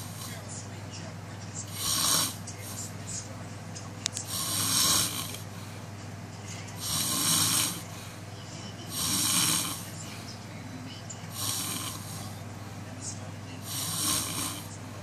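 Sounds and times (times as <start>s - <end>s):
hissy snoring breaths: 0.0s - 0.7s, 1.6s - 3.1s, 4.2s - 10.5s, 11.3s - 12.8s, 13.6s - 15.0s
steady low hum: 0.0s - 15.0s.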